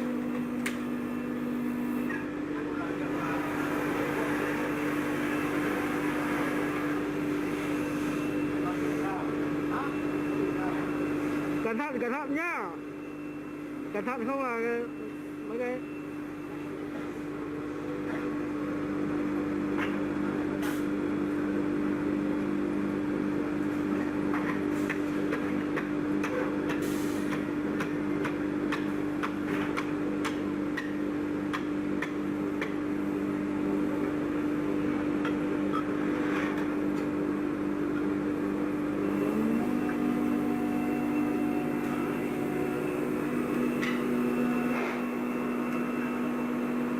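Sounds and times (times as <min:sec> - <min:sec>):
lathe machine hum: 0:00.0 - 0:11.6, 0:38.5 - 0:46.9.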